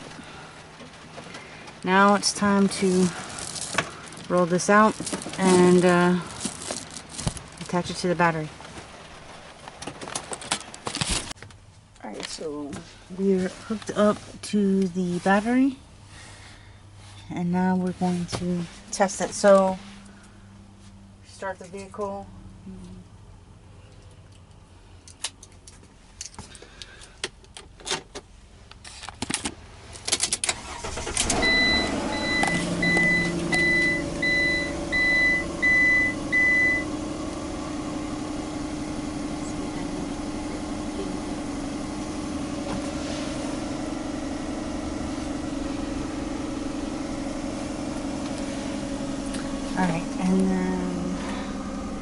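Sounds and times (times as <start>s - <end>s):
van engine starting and idling: 0.0s - 21.2s, 26.0s - 52.0s
high warning chime beeping: 31.3s - 36.9s.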